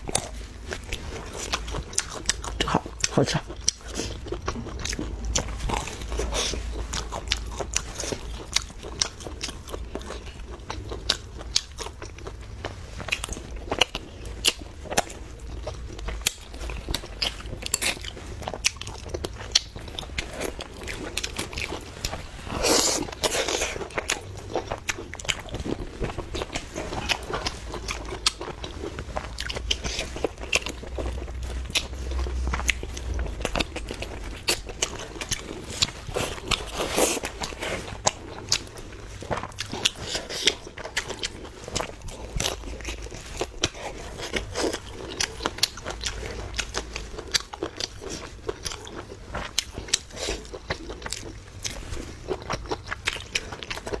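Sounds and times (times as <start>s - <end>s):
person biting and chewing food: 13.1s - 54.0s.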